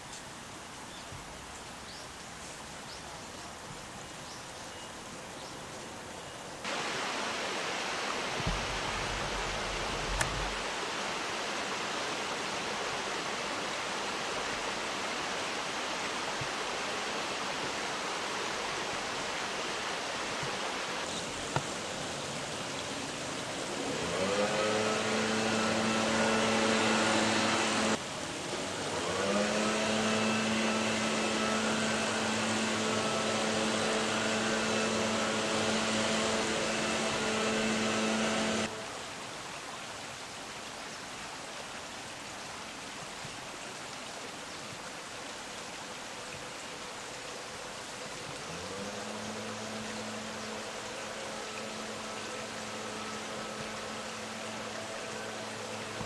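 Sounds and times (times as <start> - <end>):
steady rushing outdoor noise: 0.0 - 56.0
motor humming: 8.2 - 11.0, 13.7 - 28.0, 28.7 - 38.8, 48.3 - 56.0.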